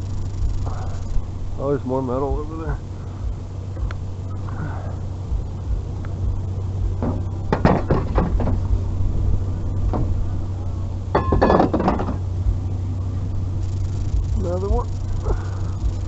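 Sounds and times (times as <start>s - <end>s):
vehicle engine humming: 0.0s - 16.0s
knocks and rattles: 7.0s - 8.8s, 11.1s - 12.2s.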